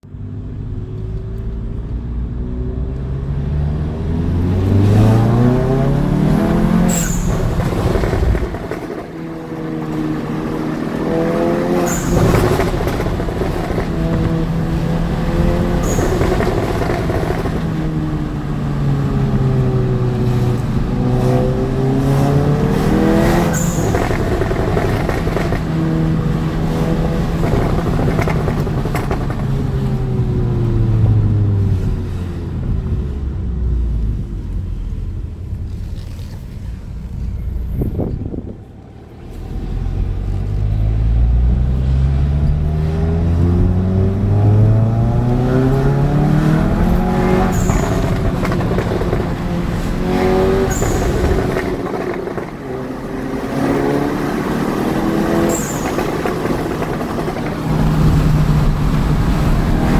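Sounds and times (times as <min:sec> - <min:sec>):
car engine revving: 0:00.2 - 0:59.9
sharp exhaust pops: 0:11.7 - 0:17.9, 0:22.7 - 0:30.0, 0:46.4 - 0:53.8.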